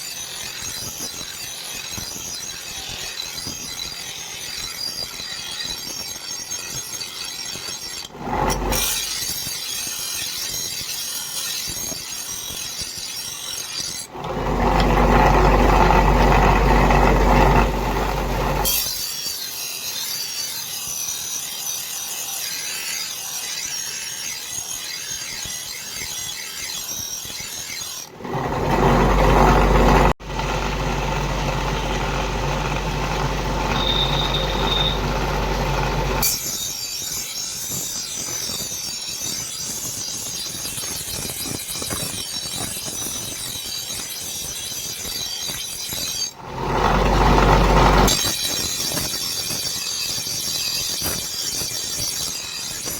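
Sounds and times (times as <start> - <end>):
power tool grinding metal: 0.0 - 39.6, 43.8 - 52.9
loud low motor hum: 8.1 - 8.9, 14.1 - 18.7, 28.2 - 36.3, 46.4 - 48.1.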